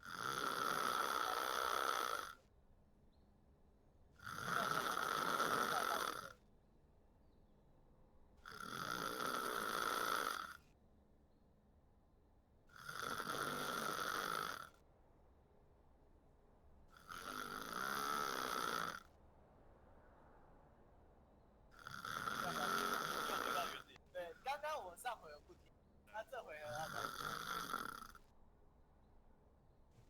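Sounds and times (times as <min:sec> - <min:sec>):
person snoring: 0:00.0 - 0:02.3, 0:04.2 - 0:06.3, 0:21.8 - 0:23.9, 0:26.6 - 0:28.2.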